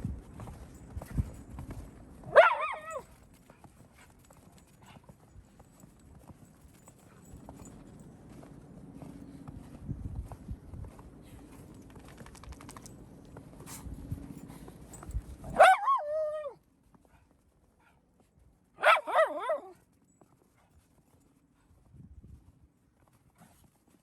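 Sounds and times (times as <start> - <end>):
scuffling and footsteps: 0.0 - 18.8
dog barking: 2.3 - 3.1, 15.5 - 16.6, 18.8 - 19.8.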